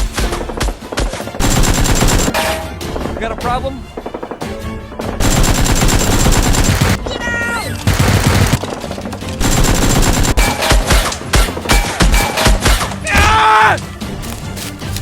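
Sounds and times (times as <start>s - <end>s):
automatic gunfire: 5.2s - 7.0s, 9.4s - 10.5s.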